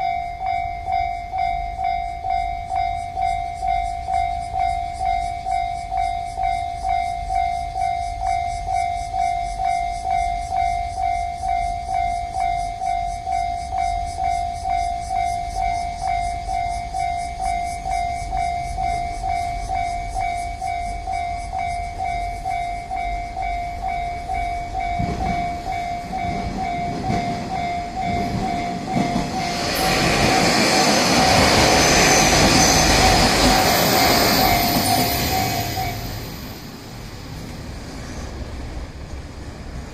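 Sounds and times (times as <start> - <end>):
level crossing warning bell: 0.0 - 36.8
train passing: 0.0 - 39.9.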